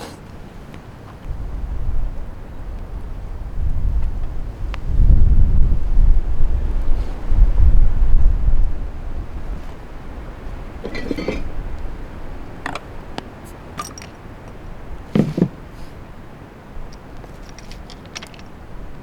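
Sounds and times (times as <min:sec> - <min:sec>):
objects knocking and clinking: 0:10.8 - 0:11.5, 0:13.8 - 0:14.6, 0:15.2 - 0:15.5, 0:16.9 - 0:18.5
loud thumps: 0:15.2 - 0:15.6.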